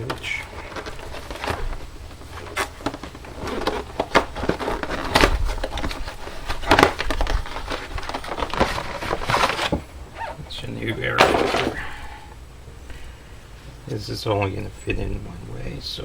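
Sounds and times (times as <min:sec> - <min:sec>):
paper filter rustling and crinkling: 0:00.0 - 0:12.4.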